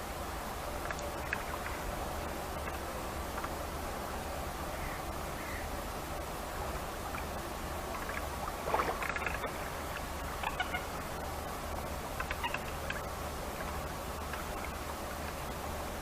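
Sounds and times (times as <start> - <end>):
steady background hiss: 0.0 - 16.0
short animal calls: 10.4 - 10.9, 12.3 - 12.7.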